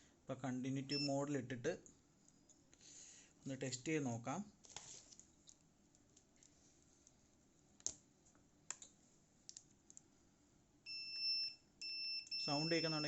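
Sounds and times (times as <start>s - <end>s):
high-pitched multimeter beep: 0.9s - 1.2s, 10.9s - 13.0s
multimeter probes clicking: 7.8s - 10.1s.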